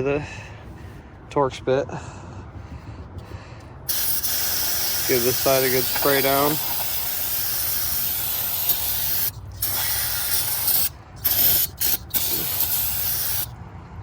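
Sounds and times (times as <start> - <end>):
aerosol spray hissing: 3.9 - 13.5.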